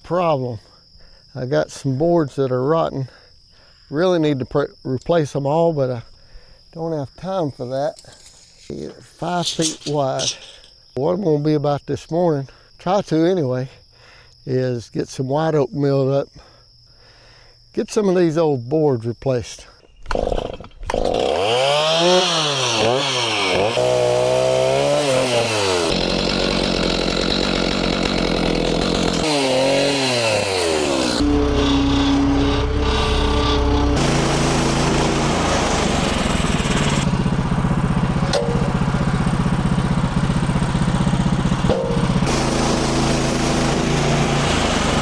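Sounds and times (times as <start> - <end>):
chainsaw cutting log: 8.0 - 10.7, 20.0 - 45.0
band sawmill running: 9.2 - 10.7, 20.9 - 45.0.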